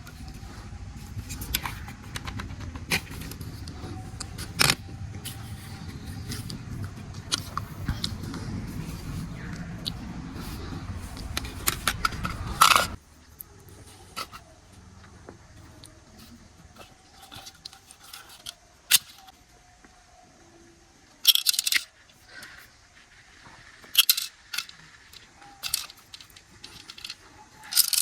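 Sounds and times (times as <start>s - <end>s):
low rumbling: 0.0s - 16.6s
hard plastic clicking and rattling: 0.0s - 19.3s, 23.8s - 28.0s
plastic clattering: 23.8s - 28.0s.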